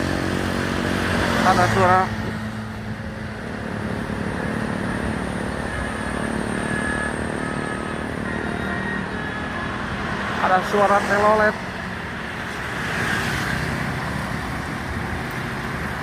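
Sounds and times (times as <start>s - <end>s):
heavy vehicle engine rumble: 0.0s - 16.0s
traffic noise: 0.0s - 16.0s.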